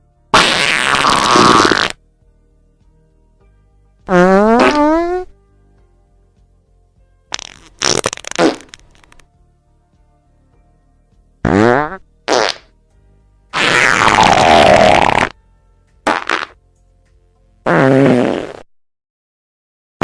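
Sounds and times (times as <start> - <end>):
farts: 0.3 - 2.0, 4.1 - 5.4, 7.3 - 9.2, 11.4 - 12.7, 13.5 - 15.4, 16.0 - 16.6, 17.6 - 18.7.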